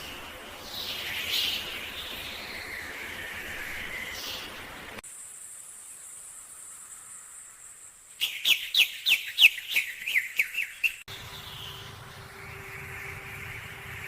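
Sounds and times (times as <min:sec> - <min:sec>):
bird chirping rapidly: 0:07.0 - 0:14.0
faint high-pitched tone: 0:11.1 - 0:14.0.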